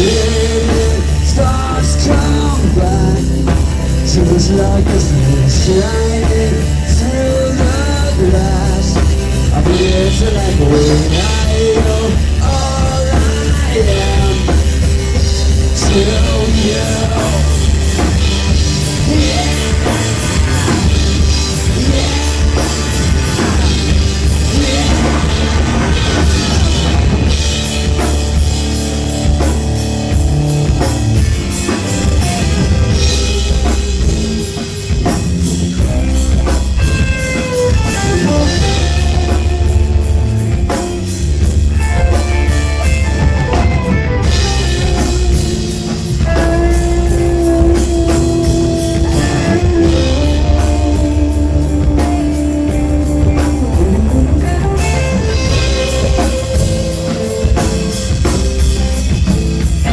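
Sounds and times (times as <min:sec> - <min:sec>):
drum kit beat: 0:00.0 - 0:59.9
heavy bass line: 0:00.0 - 0:59.9
lead guitar bending notes: 0:14.0 - 0:59.9.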